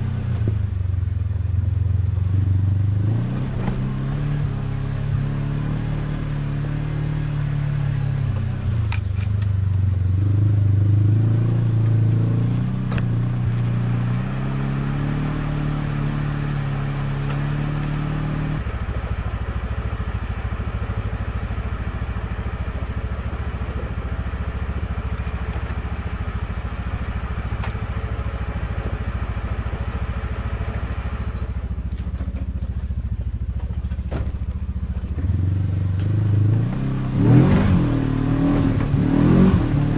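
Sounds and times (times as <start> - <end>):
vehicle engine revving and idling: 0.0 - 39.9.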